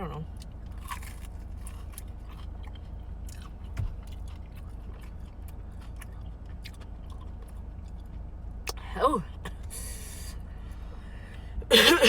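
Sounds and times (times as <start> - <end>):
chewing chicken wings: 0.4 - 8.8.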